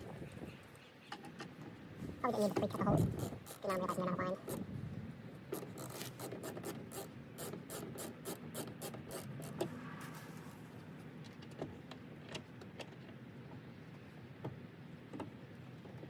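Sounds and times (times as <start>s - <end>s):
screwdriver clicks and scraping: 5.5s - 9.7s.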